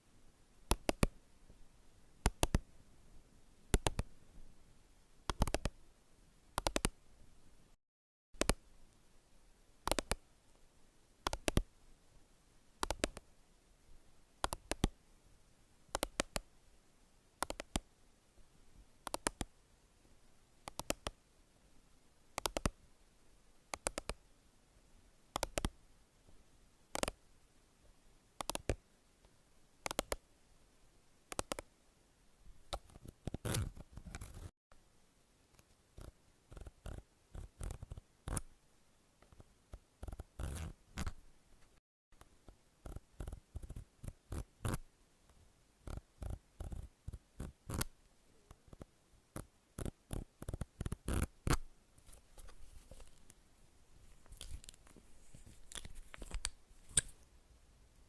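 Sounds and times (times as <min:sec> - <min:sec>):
rustling and scraping: 0:52.0 - 0:53.4, 0:54.0 - 0:57.2.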